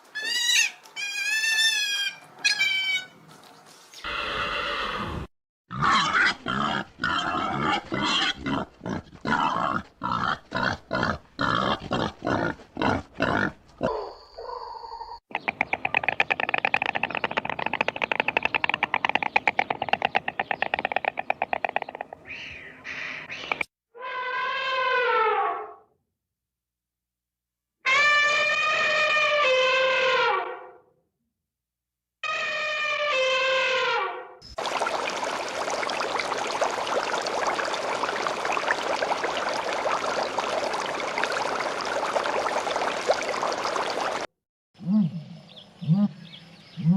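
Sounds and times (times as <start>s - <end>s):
water splashing and trickling: 34.4s - 44.3s
running water rushing: 34.6s - 44.3s.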